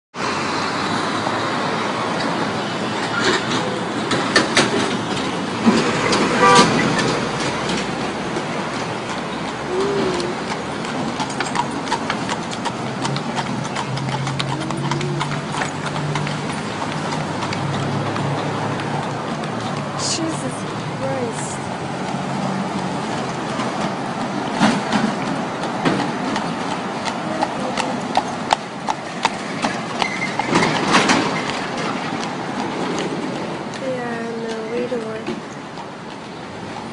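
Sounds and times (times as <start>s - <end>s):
street traffic: 0.1s - 36.9s
low vehicle hum: 0.2s - 36.9s
horse hooves on pavement: 0.6s - 36.9s.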